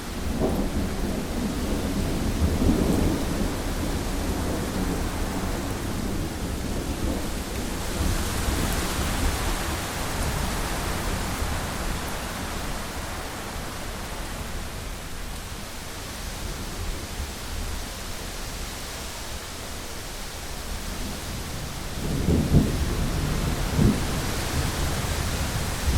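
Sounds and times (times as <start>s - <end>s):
heavy rain: 0.0s - 25.9s
rolling thunder: 0.1s - 13.1s, 20.9s - 25.9s.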